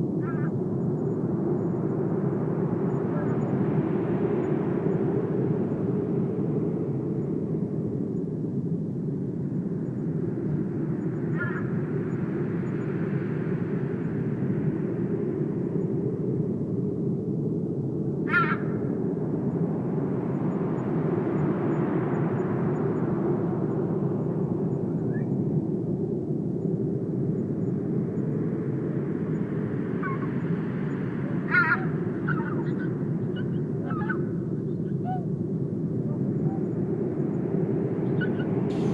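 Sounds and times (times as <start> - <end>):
low rumbling outdoor ambience: 33.0 - 38.9.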